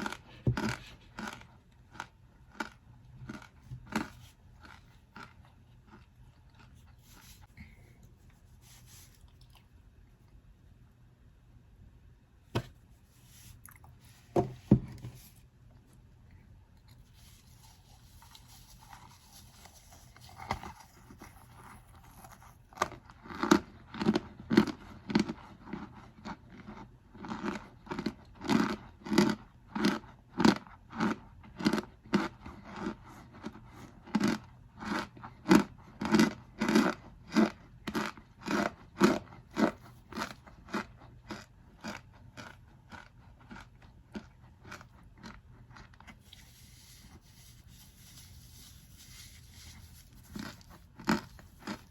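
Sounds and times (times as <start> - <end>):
cornstarch crunching in a box: 0.0 - 7.5, 16.9 - 51.9.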